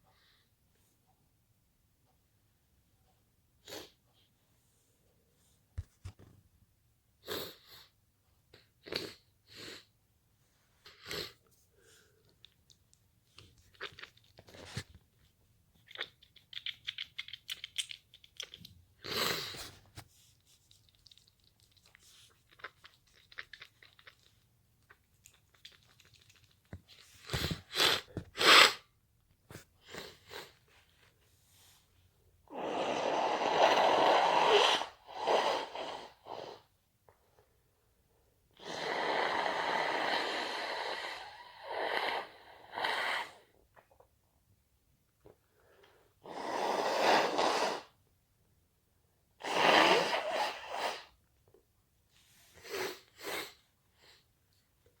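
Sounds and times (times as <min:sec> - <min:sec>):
person sniffing: 0:19.0 - 0:19.9, 0:27.3 - 0:28.9, 0:32.5 - 0:36.7, 0:38.6 - 0:43.5, 0:46.2 - 0:48.0, 0:49.4 - 0:51.2, 0:52.4 - 0:54.2.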